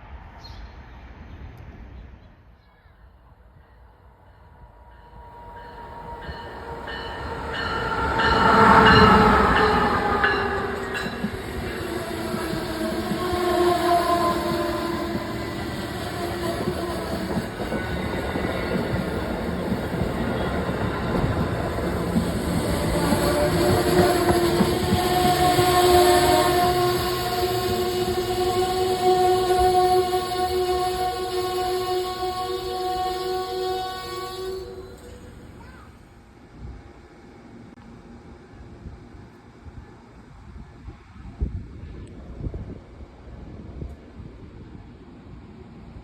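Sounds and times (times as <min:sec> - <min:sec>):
train wheels rumbling on rails: 0:04.4 - 0:35.9
train horn: 0:04.9 - 0:35.8.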